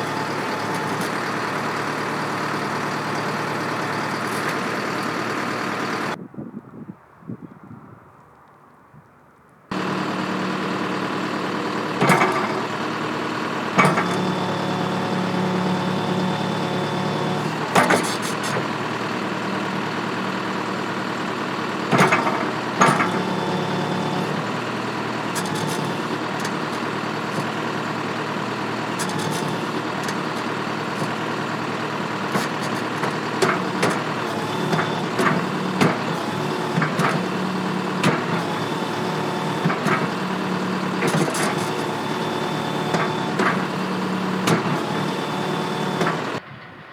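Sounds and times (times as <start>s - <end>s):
backhoe loader engine running: 0.0s - 6.2s, 9.7s - 46.9s
machine knocks and clanks: 12.0s - 12.8s, 13.8s - 19.0s, 21.8s - 24.5s, 32.2s - 46.4s.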